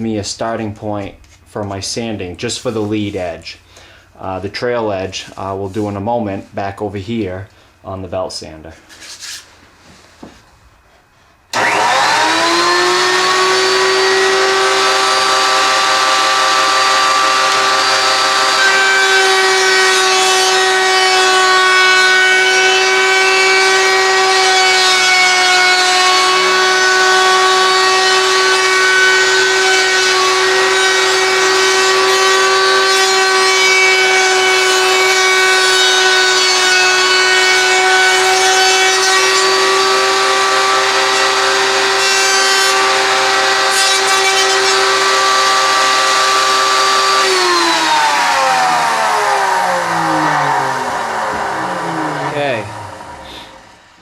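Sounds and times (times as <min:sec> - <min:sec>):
wood router whining: 0:11.5 - 0:54.0.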